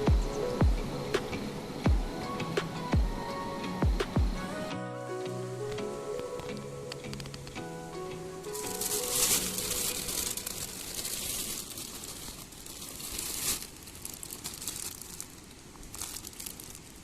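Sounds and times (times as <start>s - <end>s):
background tune: 0.0s - 11.0s
crinkling crumpling rustle: 6.2s - 7.6s, 8.4s - 17.0s.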